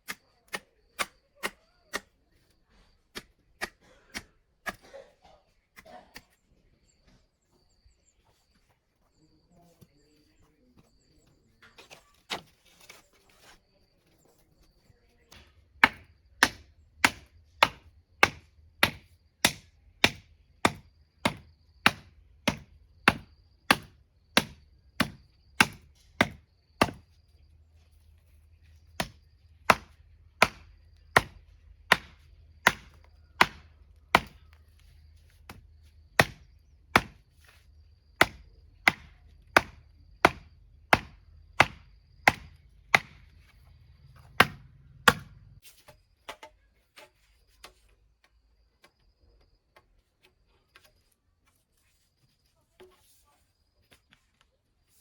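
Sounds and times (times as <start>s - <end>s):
blade chopping: 29.0s - 34.4s.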